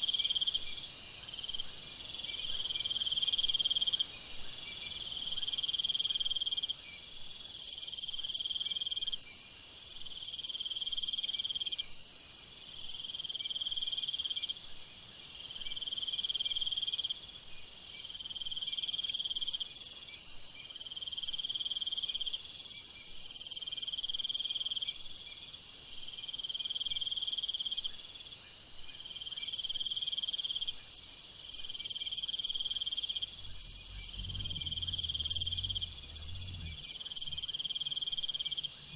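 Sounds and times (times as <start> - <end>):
loud insect trilling call: 30.9 - 38.9.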